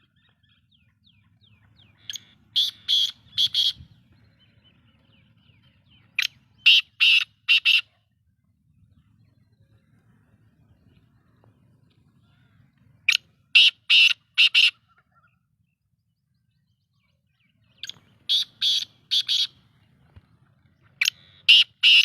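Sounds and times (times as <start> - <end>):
bird calling harsh notes: 1.9 - 4.0, 6.2 - 7.9, 13.1 - 15.2, 17.8 - 19.7, 21.0 - 22.0.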